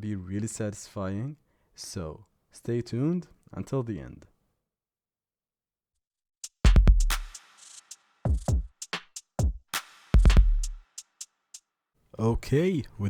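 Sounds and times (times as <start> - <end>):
electronic music with drum machine: 10.2 - 10.8.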